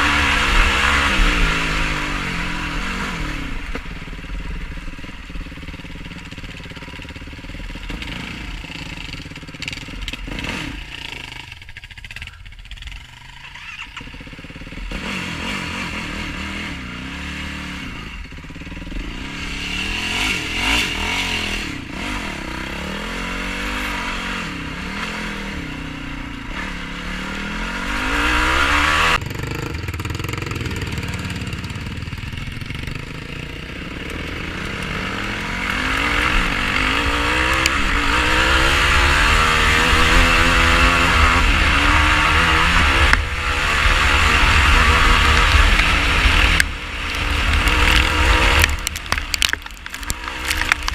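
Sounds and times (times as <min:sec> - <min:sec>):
quad engine revving: 0:00.0 - 0:50.9.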